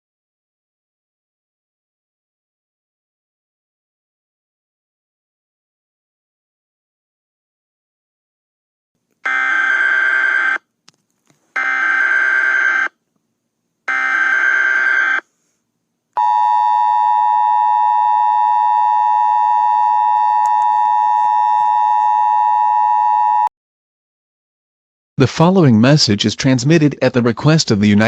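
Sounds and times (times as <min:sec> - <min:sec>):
two-tone attention signal: 0:16.2 - 0:23.5.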